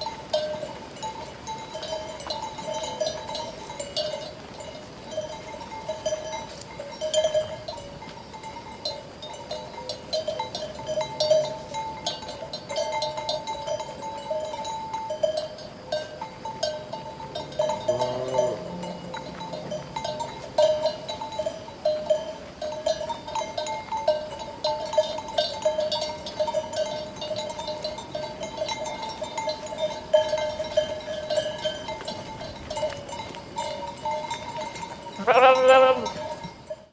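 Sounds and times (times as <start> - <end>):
animal bells clanking: 0.0 - 36.9
sheep bleating: 35.2 - 36.2.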